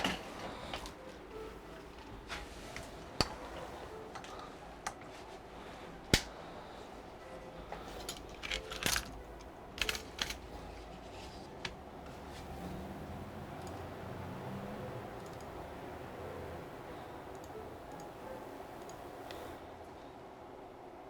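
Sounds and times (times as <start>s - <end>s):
rattling clicks: 7.8s - 12.2s.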